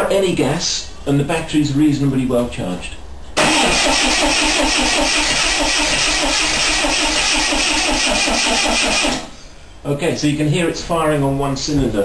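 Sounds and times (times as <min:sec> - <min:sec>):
car engine cranking on starter: 0:03.4 - 0:09.4.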